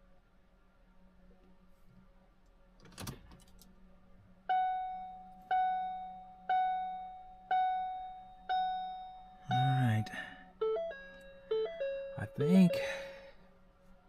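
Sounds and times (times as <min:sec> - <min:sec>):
car warning chime: 0:04.5 - 0:13.3.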